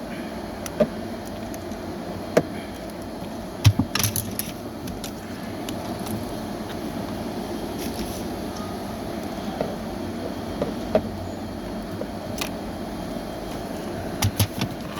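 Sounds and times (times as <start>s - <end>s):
steady background hum: 0.0s - 14.9s
hand tools clicking and clinking: 3.7s - 5.2s.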